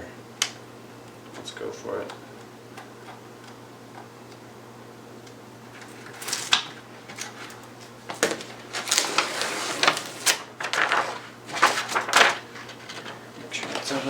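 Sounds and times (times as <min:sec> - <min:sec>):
grip tape crinkling and rubbing: 0:08.7 - 0:14.0.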